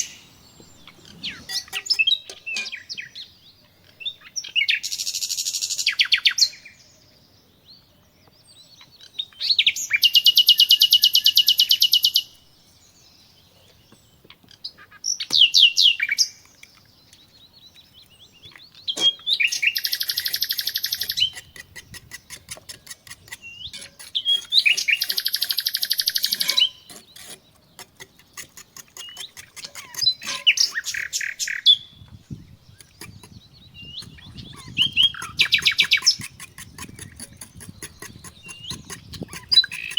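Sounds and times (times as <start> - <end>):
songbird trilling: 0.0 - 3.3, 14.6 - 39.9.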